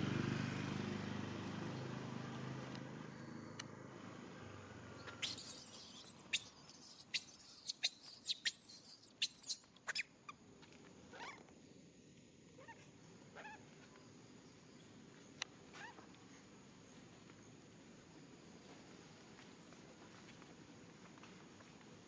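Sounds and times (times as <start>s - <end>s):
baby macaque screaming: 5.2s - 10.0s.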